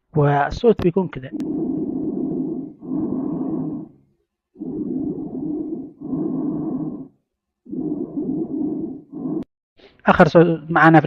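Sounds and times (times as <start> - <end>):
low rumbling breath sounds: 1.3 - 9.5.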